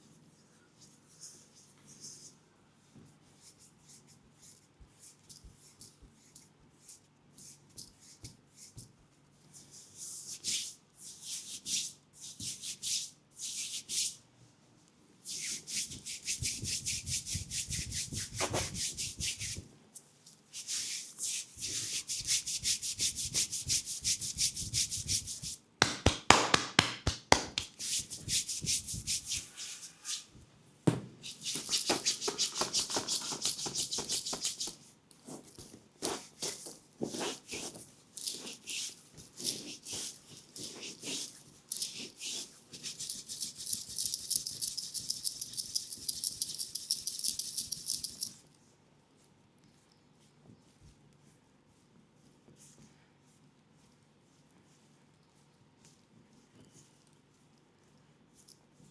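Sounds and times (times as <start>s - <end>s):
hands rubbing oiled skin: 15.3s - 19.6s, 20.5s - 30.2s, 31.2s - 48.3s
sharp taps on skin: 25.8s - 27.8s.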